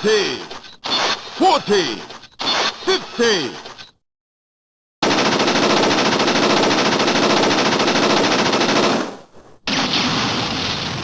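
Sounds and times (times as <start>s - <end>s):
gatling gun rapid fire: 5.0s - 10.0s.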